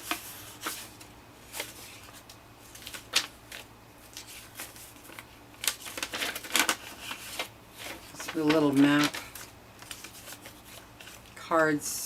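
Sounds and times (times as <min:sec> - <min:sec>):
paper pages rustling: 0:00.0 - 0:11.4.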